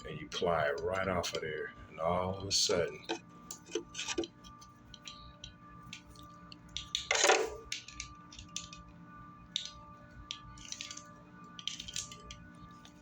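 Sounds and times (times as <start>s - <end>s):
nut scraping on threaded rod: 3.0s - 4.3s.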